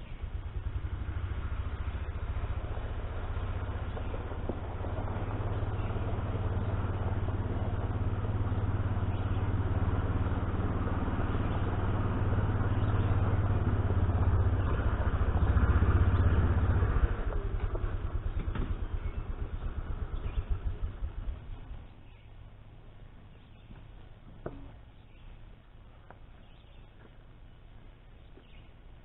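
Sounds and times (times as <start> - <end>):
vehicle engine running: 0.0 - 29.0.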